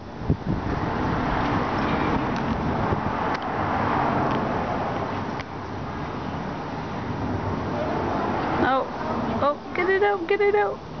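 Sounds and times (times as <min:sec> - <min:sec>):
rushing outdoor background noise: 0:00.0 - 0:11.0.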